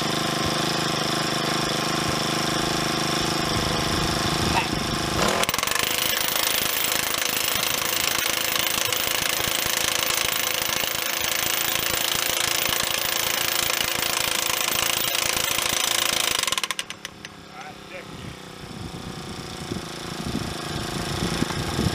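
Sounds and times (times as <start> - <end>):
powered hammer driving steel post: 4.6 - 17.7.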